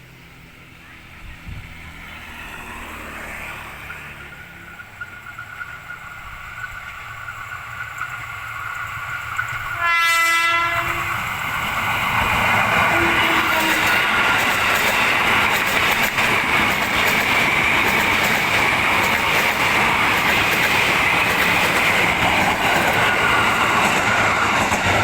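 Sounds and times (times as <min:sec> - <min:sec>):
electric train passing: 0:00.0 - 0:25.0
train whine: 0:00.0 - 0:25.0
train horn blast: 0:09.7 - 0:11.3, 0:12.8 - 0:14.4.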